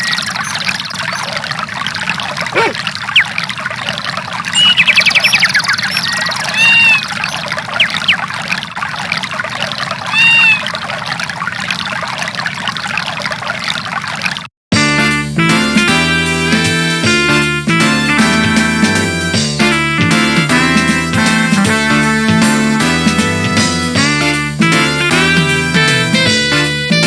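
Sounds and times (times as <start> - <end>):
bird chirps and trill: 0.0 - 1.6, 2.5 - 3.4, 4.5 - 8.3, 10.1 - 10.7
running water: 0.0 - 14.5.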